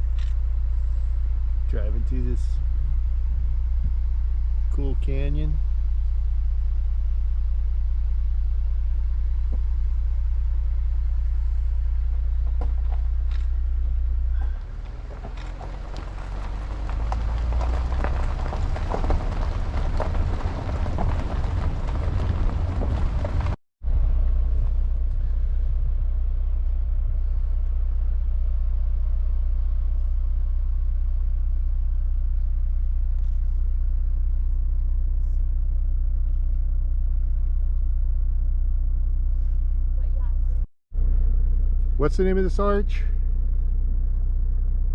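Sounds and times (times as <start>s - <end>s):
road and engine rumble: 0.0s - 44.9s.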